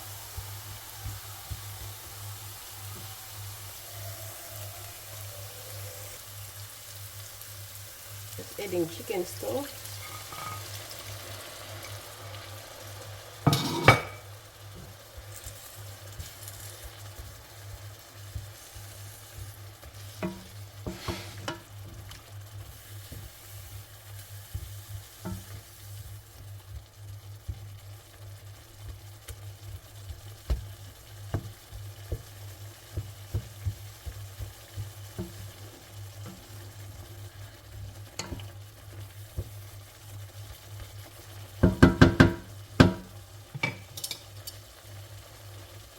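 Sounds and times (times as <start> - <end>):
sauce sizzling in a pan: 0.0 - 45.9
spoon knocking against a pan: 13.4 - 14.9, 20.2 - 21.7, 24.5 - 25.6, 31.3 - 35.6, 38.2 - 38.5, 41.6 - 44.6.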